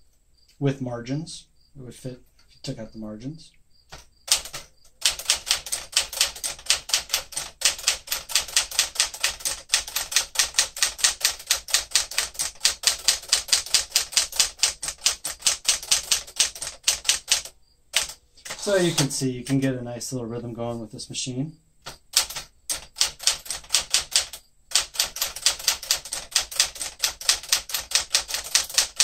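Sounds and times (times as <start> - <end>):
typewriter keystrokes: 3.9 - 19.6, 21.9 - 29.0.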